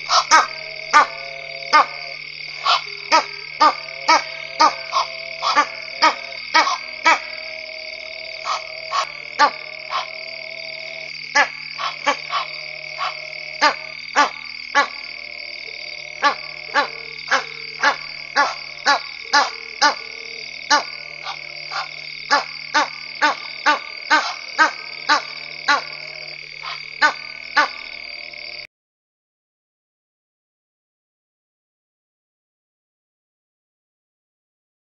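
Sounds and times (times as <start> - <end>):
clicking animal calls: 0.0 - 2.0, 2.6 - 7.2, 8.4 - 10.1, 11.4 - 15.0, 26.6 - 27.8
high-pitched night chorus: 0.0 - 28.7
humming tones: 0.0 - 28.7.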